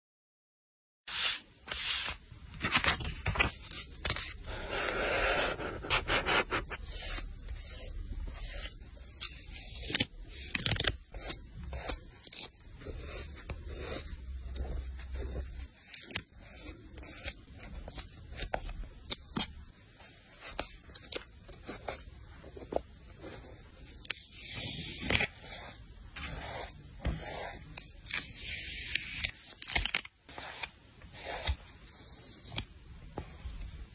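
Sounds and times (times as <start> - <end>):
paper and stickers rustling: 1.1 - 7.6, 8.3 - 19.5
paper tearing: 8.6 - 12.5.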